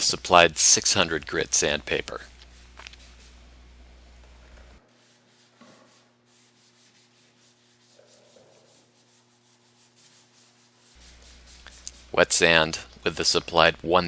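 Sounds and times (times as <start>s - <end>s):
wet sanding strokes: 4.8s - 13.7s.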